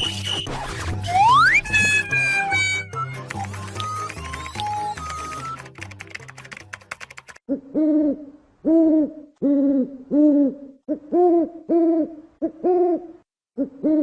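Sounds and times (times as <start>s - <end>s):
owl hooting: 7.7s - 14.0s.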